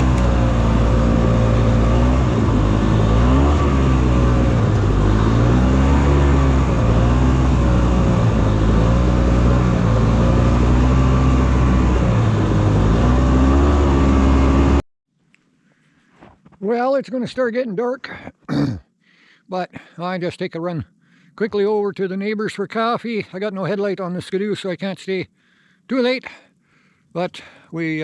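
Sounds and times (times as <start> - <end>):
snowmobile engine revving: 0.0 - 14.8.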